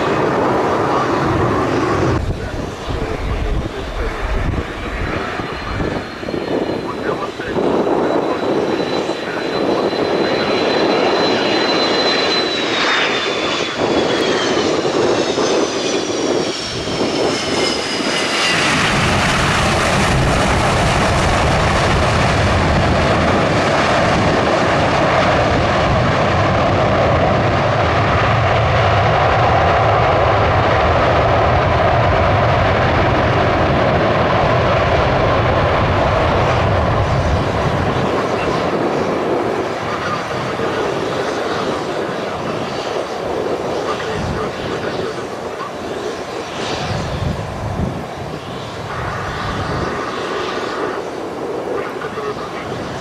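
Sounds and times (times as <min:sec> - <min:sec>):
deep jet engine rumble: 0:00.0 - 0:53.0
jet engine whine: 0:00.0 - 0:53.0.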